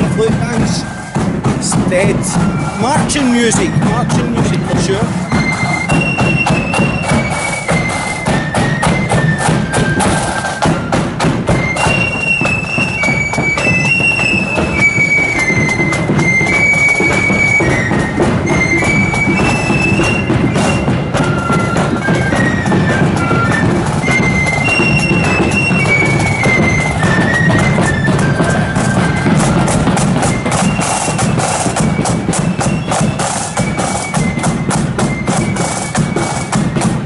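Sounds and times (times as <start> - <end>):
flute melody: 0.0 - 37.0
marching drums beating: 0.0 - 37.0.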